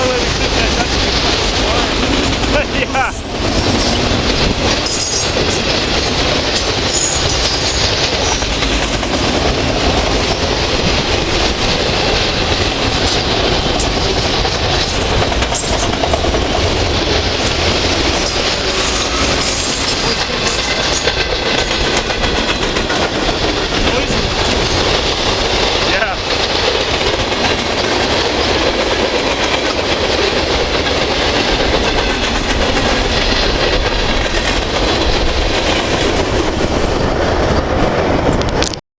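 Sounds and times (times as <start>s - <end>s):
freight train cars rumbling: 0.0s - 38.8s
wheels clicking over rail joints: 0.0s - 38.8s.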